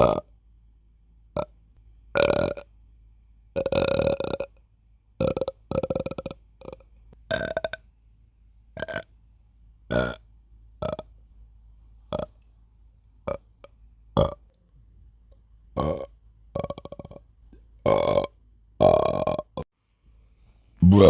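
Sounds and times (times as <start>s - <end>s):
person burping: 0.0s - 0.3s, 15.8s - 17.2s, 17.9s - 19.6s.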